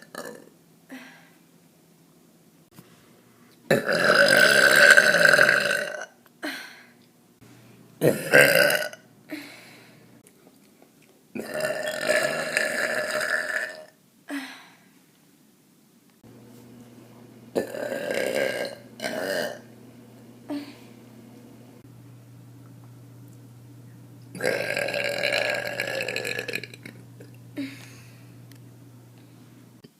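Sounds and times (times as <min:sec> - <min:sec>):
woman belching: 0:00.0 - 0:00.5, 0:03.7 - 0:06.1, 0:08.0 - 0:09.0, 0:11.4 - 0:13.9, 0:17.6 - 0:19.6, 0:24.4 - 0:27.7.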